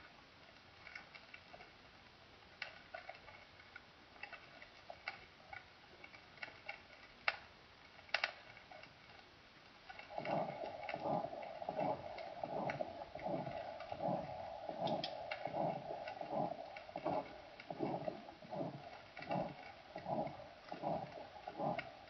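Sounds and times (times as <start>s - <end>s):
vinyl record hiss: 0.0s - 22.0s.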